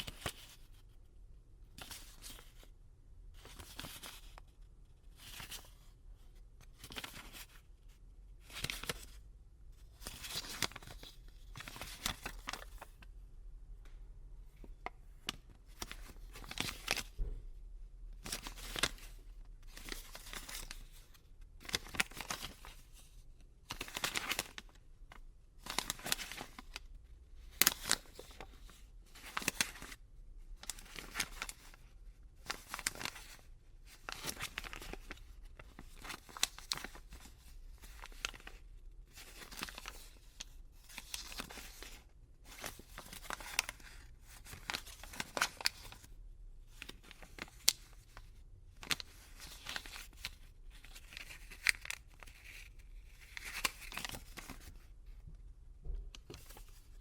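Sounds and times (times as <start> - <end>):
paper banknotes rustling: 8.4 - 9.2, 10.0 - 13.0, 15.2 - 17.2, 18.2 - 23.1, 23.7 - 24.7, 25.6 - 26.7, 27.6 - 30.0, 30.6 - 31.8, 32.4 - 46.1, 46.7 - 54.9.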